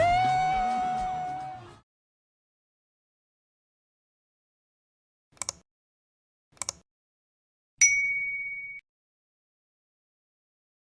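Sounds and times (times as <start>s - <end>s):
short clicks: 5.3s - 5.6s, 6.5s - 6.8s
bright bell-like ding: 7.8s - 8.8s.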